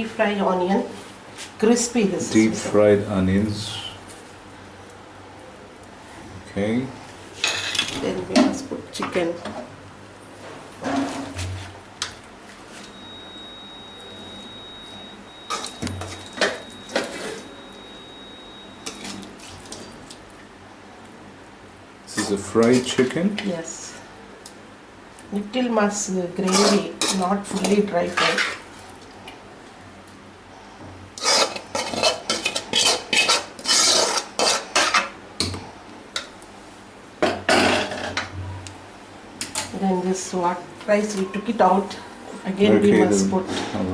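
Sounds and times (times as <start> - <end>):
metal spoon scraping a pot: 26.4 - 28.6, 31.2 - 35.1.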